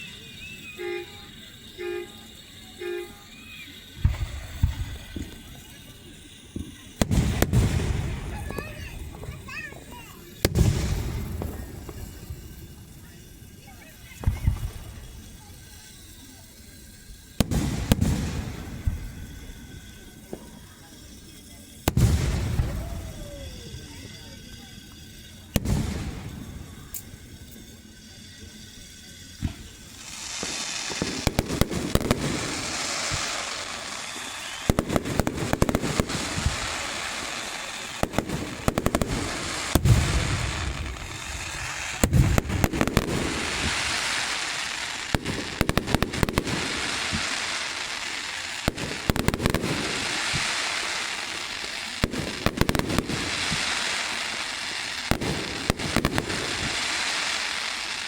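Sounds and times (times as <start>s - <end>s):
fireworks crackling: 0.0s - 58.0s
firework bang: 2.8s - 5.9s, 6.6s - 13.2s, 13.8s - 15.4s, 17.3s - 54.4s, 55.0s - 57.8s
deep firework booms: 4.0s - 5.7s, 6.6s - 9.6s, 10.4s - 13.1s, 17.4s - 19.4s, 21.8s - 24.3s, 25.5s - 27.0s, 29.4s - 47.4s, 55.0s - 57.1s.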